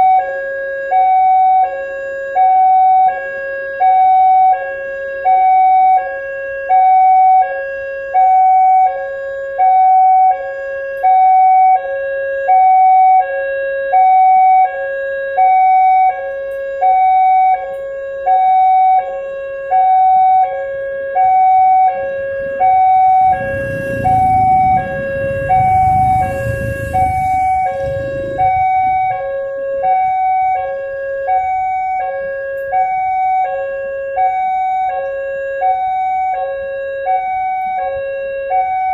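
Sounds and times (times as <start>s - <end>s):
two-tone level crossing siren: 0.0s - 38.9s
low rumble with hiss: 22.4s - 29.4s.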